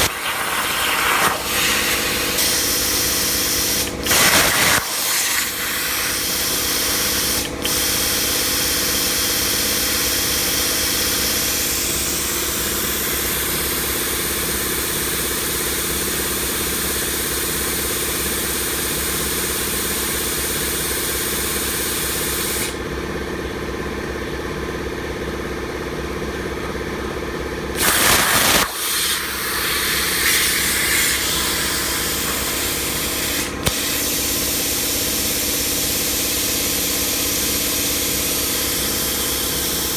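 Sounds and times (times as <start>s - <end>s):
plasma cutter hissing: 0.0s - 12.1s, 27.8s - 39.9s.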